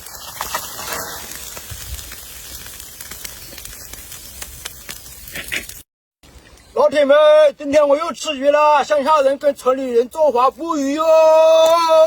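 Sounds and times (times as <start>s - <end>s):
steady hiss: 0.0s - 5.8s
faint crackles and ticks: 0.0s - 6.7s.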